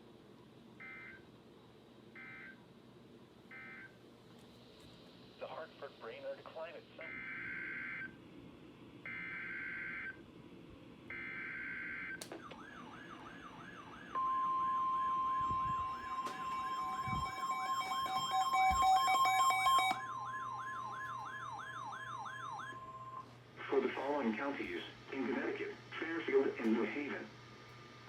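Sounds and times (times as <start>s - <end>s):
warbling electronic siren tone: 11.2s - 23.3s
screeching digital header data: 14.2s - 21.1s
steady alert tone: 14.2s - 23.2s.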